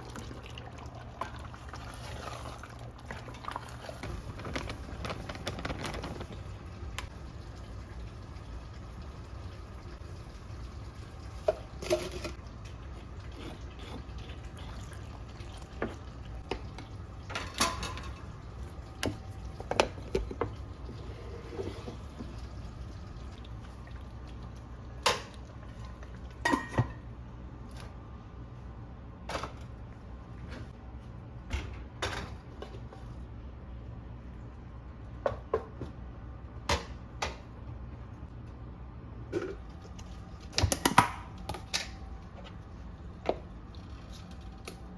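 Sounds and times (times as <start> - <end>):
dishes and utensils clinking: 26.4 - 27.0.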